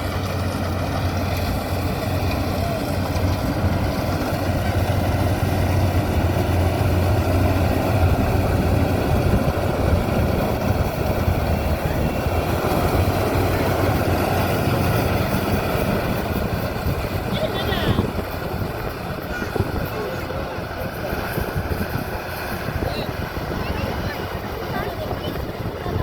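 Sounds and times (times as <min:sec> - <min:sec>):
combine harvester engine hum: 0:00.0 - 0:26.0.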